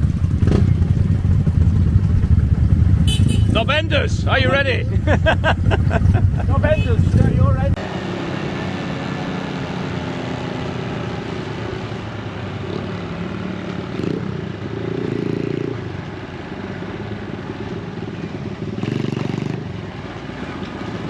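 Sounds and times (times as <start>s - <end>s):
small motorcycle engines running: 0.0s - 15.7s.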